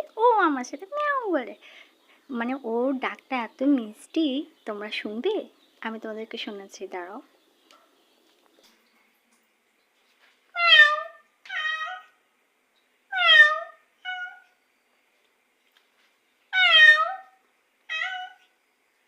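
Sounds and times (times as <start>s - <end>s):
cat meowing: 10.6s - 12.2s, 13.1s - 14.5s, 16.6s - 18.5s.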